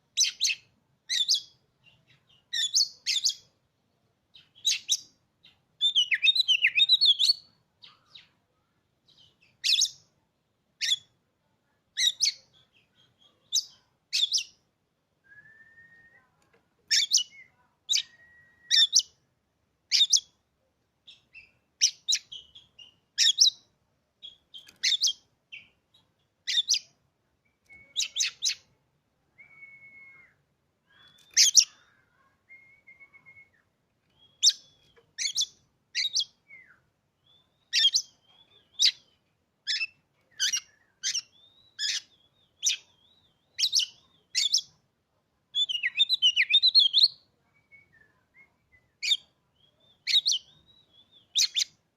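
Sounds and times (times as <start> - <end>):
thin whistled bird notes: 15.2 - 19.2, 24.2 - 28.7, 29.3 - 31.8, 32.5 - 39.1, 45.6 - 51.8
harsh bird calls: 30.2 - 32.3.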